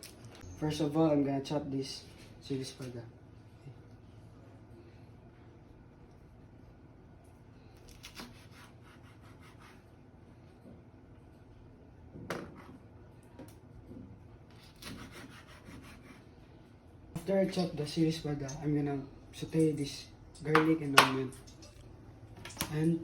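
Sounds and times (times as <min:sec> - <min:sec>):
knife chopping on cutting board: 0:14.7 - 0:16.2.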